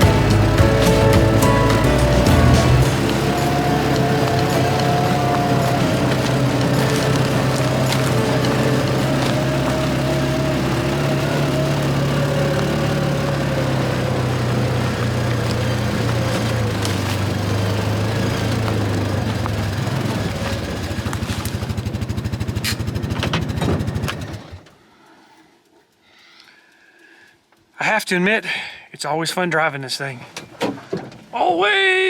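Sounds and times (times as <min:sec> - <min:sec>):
vehicle knocks and rattles: 0:00.0 - 0:24.6
utility vehicle engine running: 0:00.0 - 0:24.7.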